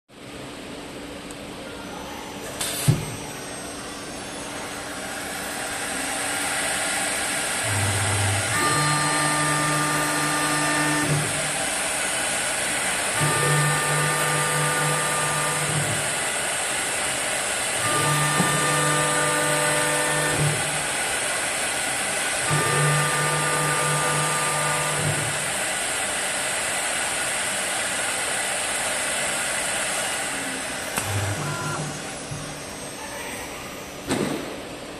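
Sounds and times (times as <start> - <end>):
wood lathe running with hiss: 3.4 - 33.7
motor whine: 7.6 - 11.6, 13.1 - 16.2, 17.7 - 21.0, 22.4 - 25.5, 30.3 - 32.9.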